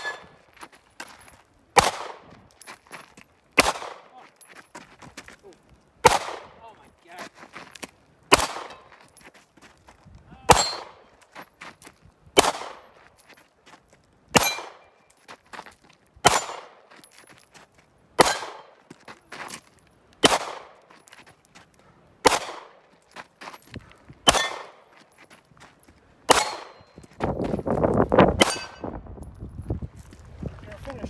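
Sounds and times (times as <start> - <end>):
gunshots with echo: 1.8 - 2.3, 3.6 - 4.2, 6.0 - 6.6, 8.3 - 8.8, 10.5 - 11.0, 12.4 - 12.8, 16.2 - 16.8, 18.2 - 18.7, 20.2 - 20.8, 22.2 - 22.8, 24.3 - 24.8, 26.3 - 26.8.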